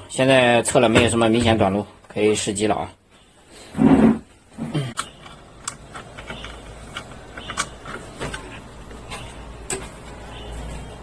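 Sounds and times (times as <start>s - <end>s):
sharp clicks and light taps: 5.0s - 10.0s.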